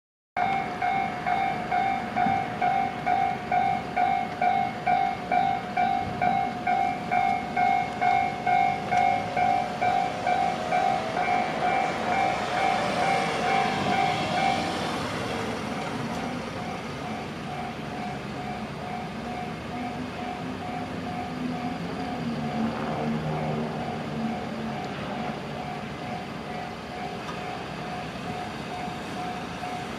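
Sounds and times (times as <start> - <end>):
level crossing bell ringing: 0.4 - 14.8
electric train passing: 0.4 - 29.9.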